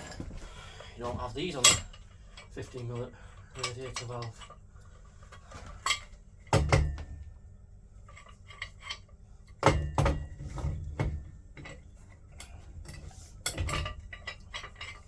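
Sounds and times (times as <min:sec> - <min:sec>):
metal parts clinking and clattering: 0:13.4 - 0:15.0.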